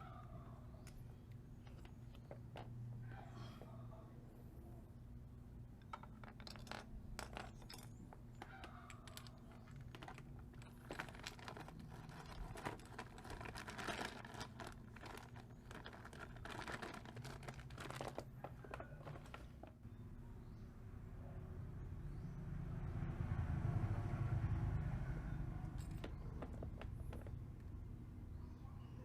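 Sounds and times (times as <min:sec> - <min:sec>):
low background hum: 0:00.0 - 0:29.0
metal tools clicking and rattling: 0:05.8 - 0:19.7.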